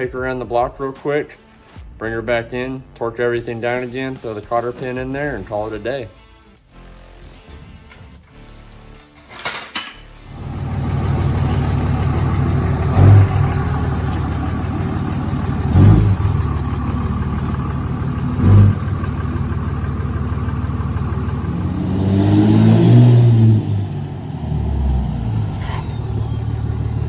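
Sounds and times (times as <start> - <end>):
diesel engine running: 10.3 - 27.0
engine revving: 10.3 - 27.0.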